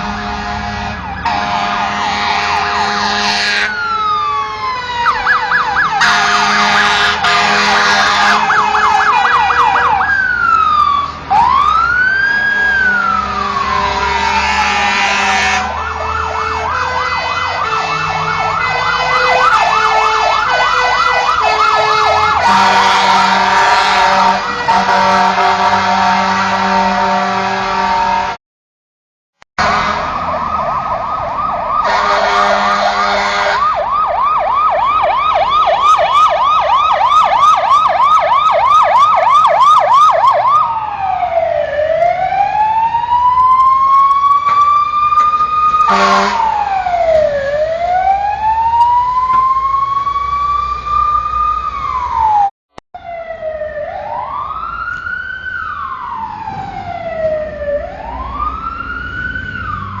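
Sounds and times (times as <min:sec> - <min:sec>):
horn blast: 0:00.0 - 0:03.8, 0:06.0 - 0:10.0, 0:13.1 - 0:28.4, 0:29.6 - 0:30.4, 0:31.8 - 0:33.7, 0:45.9 - 0:46.6
fire engine siren: 0:00.0 - 0:28.4, 0:29.6 - 1:00.0
truck rumble: 0:00.0 - 0:28.4, 0:29.6 - 1:00.0.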